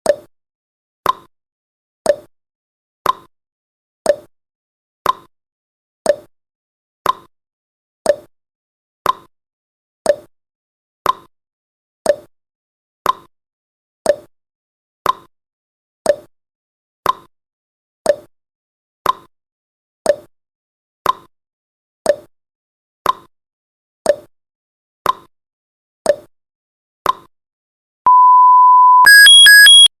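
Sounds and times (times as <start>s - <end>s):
long steady beep: 28.1s - 29.9s.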